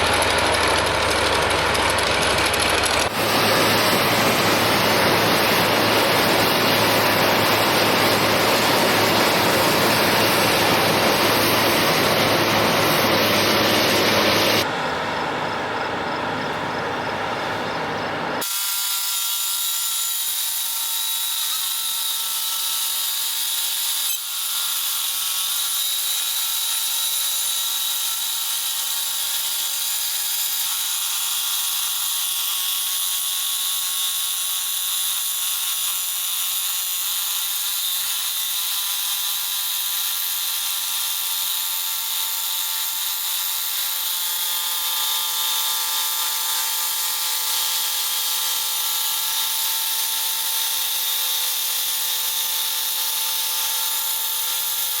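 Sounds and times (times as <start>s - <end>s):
machinery high-pitched whine: 0.0s - 18.7s.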